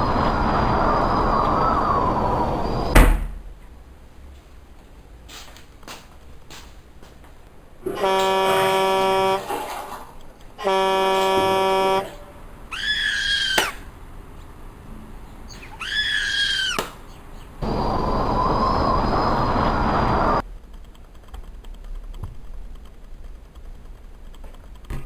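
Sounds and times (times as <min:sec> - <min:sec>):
sharp bang: 0:02.9 - 0:03.6
car horn blasts: 0:07.8 - 0:09.6, 0:10.6 - 0:12.5
high-pitched cry: 0:12.1 - 0:13.9, 0:15.6 - 0:16.9.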